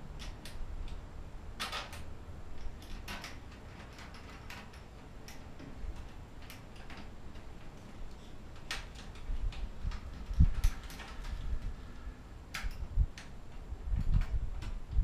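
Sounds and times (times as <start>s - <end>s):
clicks and knocks of metal parts: 0.0s - 1.0s, 1.6s - 14.8s
low background hum: 0.0s - 15.0s.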